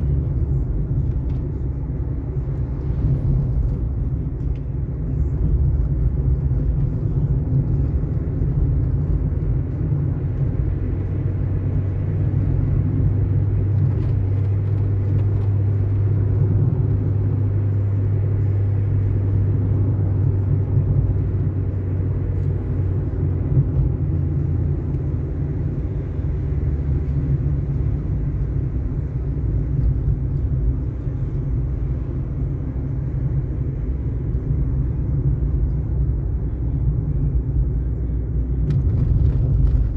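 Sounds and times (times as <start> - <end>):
car driving on asphalt: 0.0 - 39.9.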